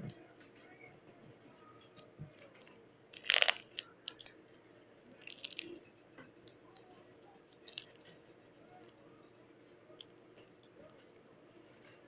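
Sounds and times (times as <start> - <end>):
slime squishing and popping: 3.2 - 4.4.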